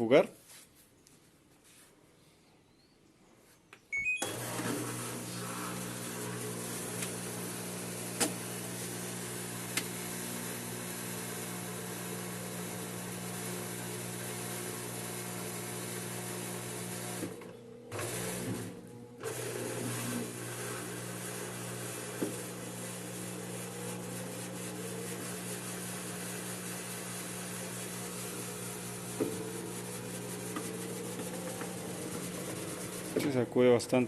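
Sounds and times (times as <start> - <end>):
control panel beeps: 3.9 - 4.3
washing machine spinning: 4.2 - 33.4.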